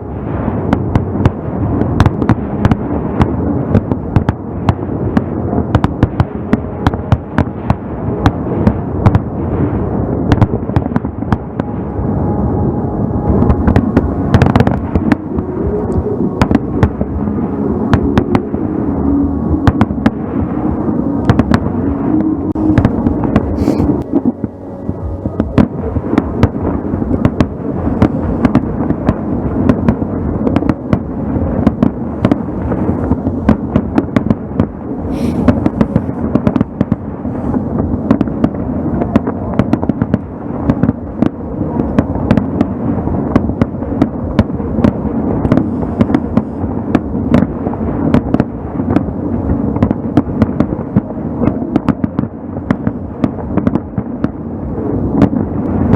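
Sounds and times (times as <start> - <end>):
fireworks rumble: 0.0 - 55.9
fireworks cracks and bangs: 25.4 - 54.4.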